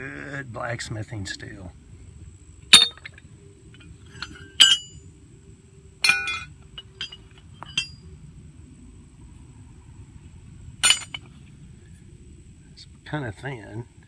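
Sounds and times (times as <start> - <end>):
steel pieces clinking: 2.7 - 3.2, 4.1 - 5.0, 6.0 - 8.0, 10.8 - 11.3.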